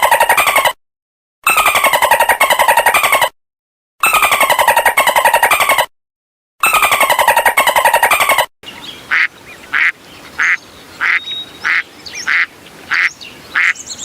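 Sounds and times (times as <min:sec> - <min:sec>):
duck quacking: 0:09.1 - 0:13.8.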